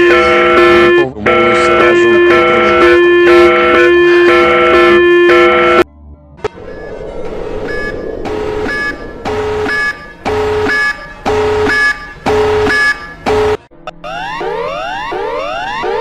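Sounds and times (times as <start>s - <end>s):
pulsed alarm tone beeping: 0.0s - 5.8s, 6.6s - 16.0s.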